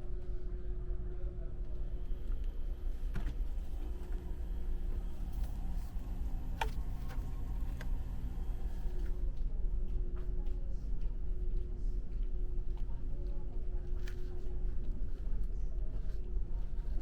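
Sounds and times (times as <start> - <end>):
ship engines rumbling: 2.0 - 9.2.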